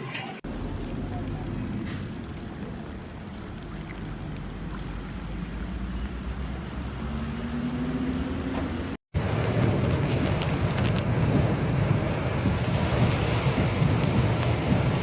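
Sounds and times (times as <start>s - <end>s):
rushing floodwater: 0.0s - 8.2s
rain: 0.4s - 7.0s, 9.2s - 15.0s.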